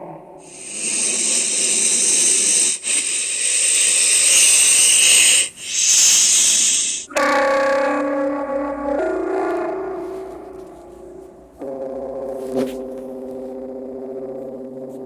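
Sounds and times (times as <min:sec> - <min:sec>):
loud breathy hiss: 0:00.4 - 0:07.1.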